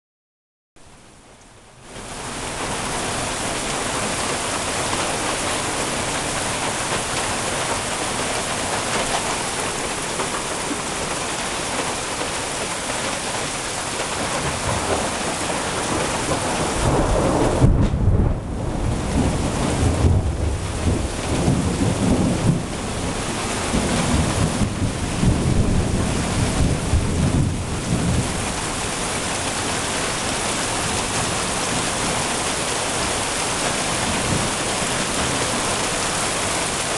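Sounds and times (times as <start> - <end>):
steady rain falling: 0.8 - 36.9
thunder rumbling: 2.6 - 36.9.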